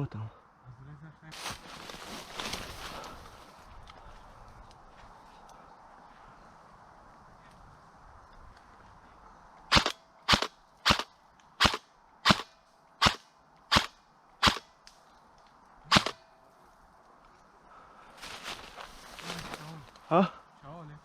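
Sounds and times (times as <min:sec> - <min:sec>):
airsoft gun shots: 0:09.7 - 0:14.6, 0:15.9 - 0:16.2.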